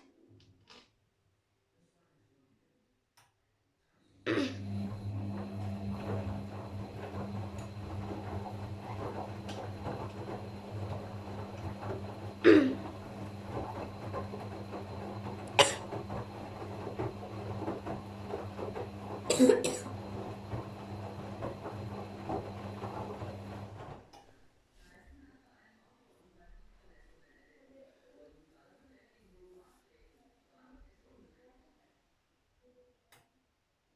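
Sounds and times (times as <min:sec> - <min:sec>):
washing machine humming: 0:04.3 - 0:24.1.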